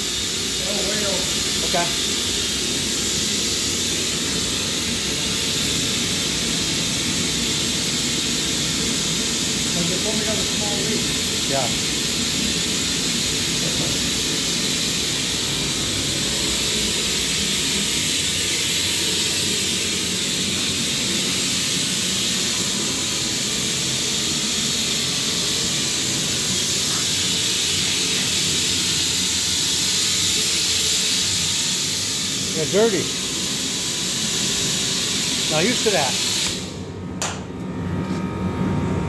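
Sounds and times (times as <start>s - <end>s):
compressed air hissing: 0.0s - 36.9s.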